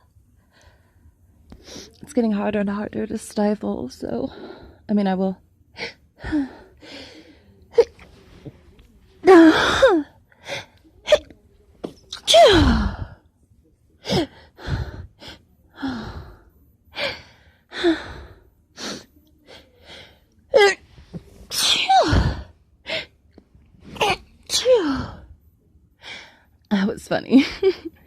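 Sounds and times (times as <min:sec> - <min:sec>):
woman sneezing: 0:12.1 - 0:13.0, 0:21.5 - 0:22.4.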